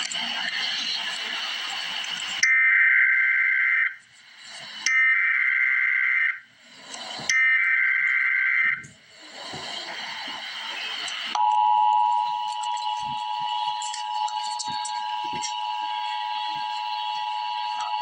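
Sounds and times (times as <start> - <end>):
hiss: 0.0 - 2.4, 6.5 - 7.3, 8.8 - 11.4
warbling digital data tones: 10.1 - 18.0
two-tone attention signal: 11.3 - 18.0.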